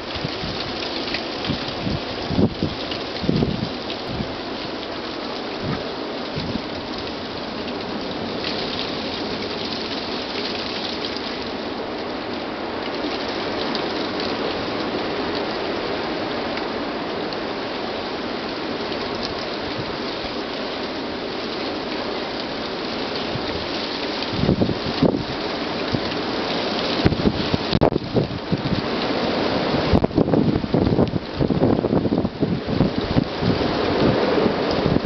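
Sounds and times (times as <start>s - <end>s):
blizzard wind driving snow: 19.6s - 35.0s.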